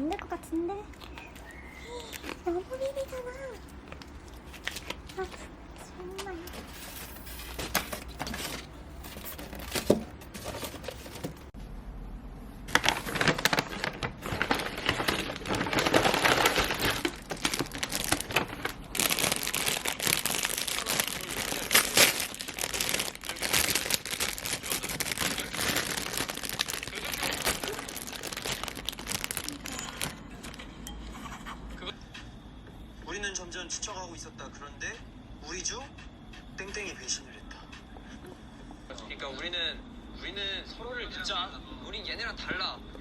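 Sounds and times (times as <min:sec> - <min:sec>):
plastic packaging crinkling: 0:00.9 - 0:05.5, 0:06.1 - 0:11.5, 0:12.7 - 0:30.7.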